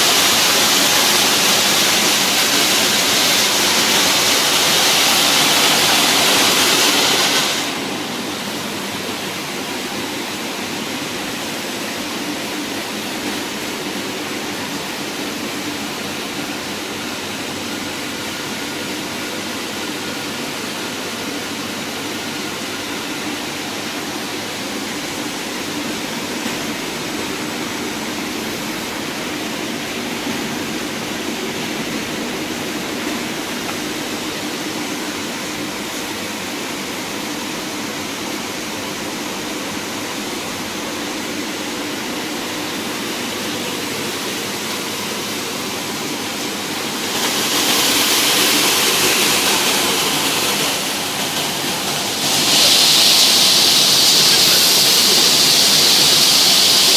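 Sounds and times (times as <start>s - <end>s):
sanding machine running: 0.0s - 10.1s, 42.0s - 56.9s.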